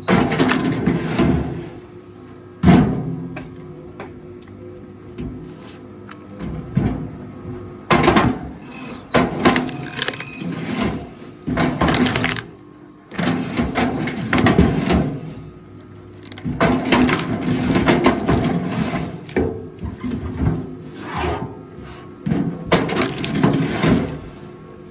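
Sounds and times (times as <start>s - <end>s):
wood cracking and squealing: 8.3s - 10.7s.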